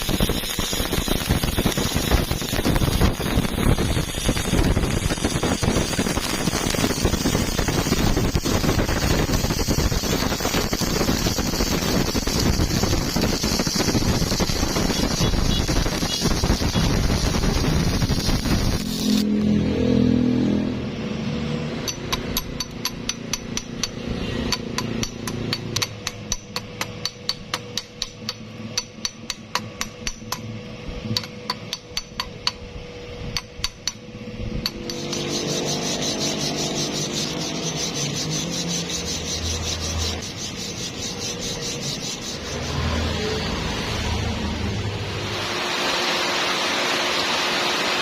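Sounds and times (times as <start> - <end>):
steady crackling hiss: 0.0 - 19.2
small hammer tapping metal: 21.8 - 30.5, 31.1 - 32.7, 33.3 - 42.7.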